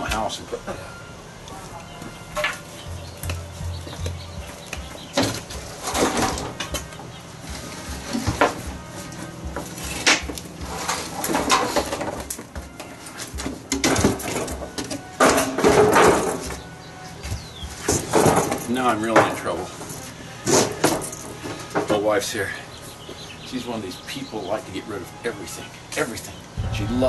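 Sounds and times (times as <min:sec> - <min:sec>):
boards knocking and clattering: 0:13.4 - 0:16.6, 0:17.9 - 0:18.6.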